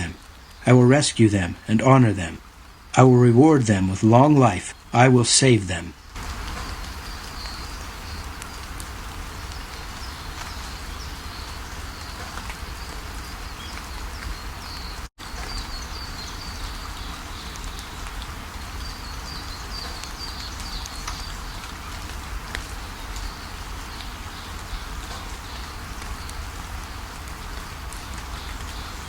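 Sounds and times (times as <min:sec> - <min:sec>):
waterfall rushing: 0:00.0 - 0:12.0
small birds chirping: 0:00.0 - 0:29.0.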